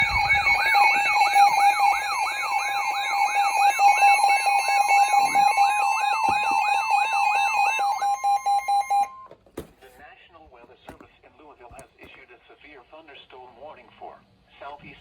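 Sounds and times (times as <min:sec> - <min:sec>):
emergency alert warbling tone: 0:00.0 - 0:09.2.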